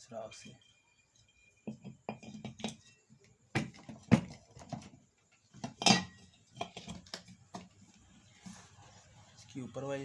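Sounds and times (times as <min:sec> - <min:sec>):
metal fan parts knocking and clinking: 0:01.6 - 0:07.7.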